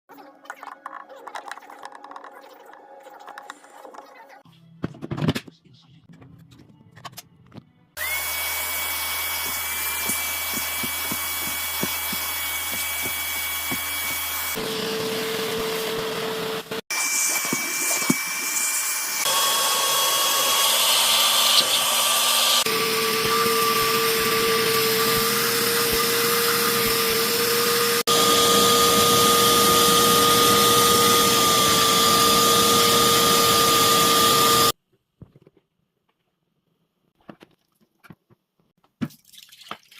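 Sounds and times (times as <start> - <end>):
vacuum cleaner motor whining: 8.0 - 34.8.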